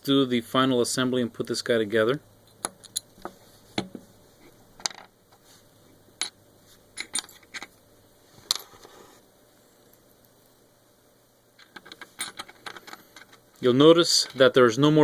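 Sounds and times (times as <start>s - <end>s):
small metal parts clinking: 2.6s - 3.2s, 7.0s - 7.8s, 11.6s - 13.4s.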